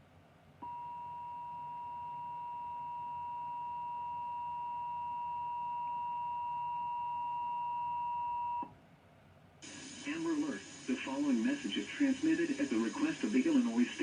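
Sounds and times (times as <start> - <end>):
steady two-tone beep: 0.6 - 8.7.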